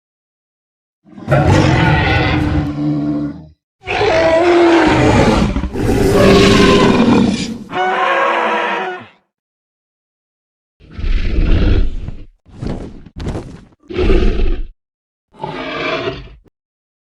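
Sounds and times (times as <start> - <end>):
dinosaur roars: 1.1 - 9.2, 10.8 - 12.3, 13.8 - 14.7, 15.4 - 16.5.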